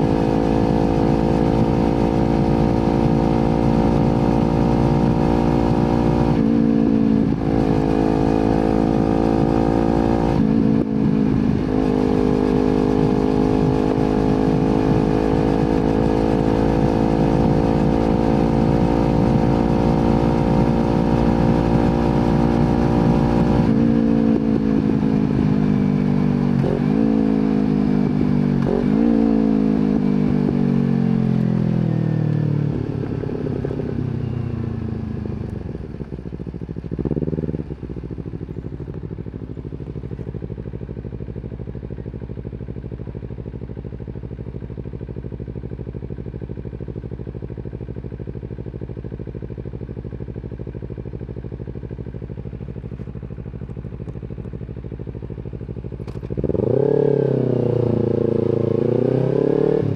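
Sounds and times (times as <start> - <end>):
motorcycle engine riding: 0.0 - 59.9
motorcycle throttle blips: 29.9 - 59.9.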